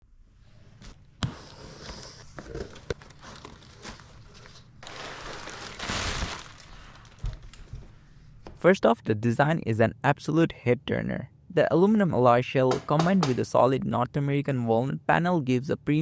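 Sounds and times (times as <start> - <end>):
packaging crinkling and rustling: 2.2 - 7.7
packaging tearing: 2.5 - 7.2.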